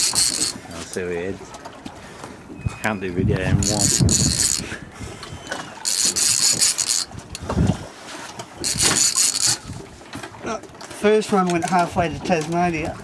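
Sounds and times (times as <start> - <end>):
fishing reel drag screaming: 0.0 - 0.6, 3.6 - 4.8, 5.8 - 7.1, 8.6 - 9.8
boat noise: 0.0 - 13.0
wind: 0.0 - 13.0.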